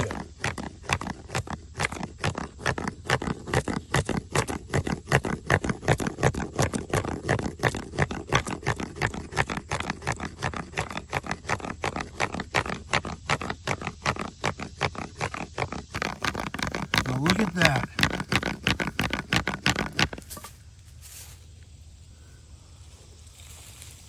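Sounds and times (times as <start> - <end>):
stick rasping on notched stick: 14.6 - 20.4.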